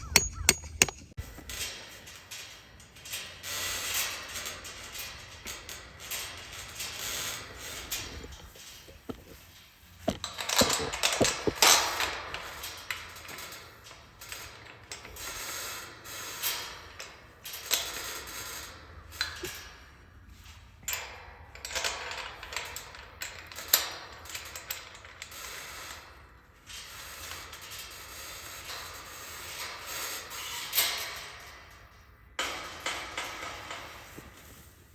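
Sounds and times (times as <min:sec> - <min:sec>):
hand tool clicking and scraping: 0:00.0 - 0:19.7.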